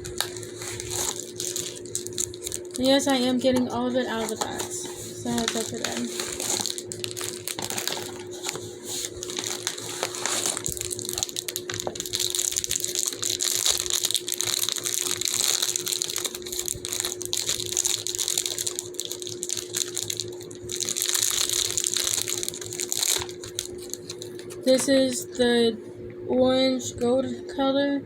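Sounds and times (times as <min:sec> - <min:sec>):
plastic bags crinkling: 0:00.0 - 0:24.8.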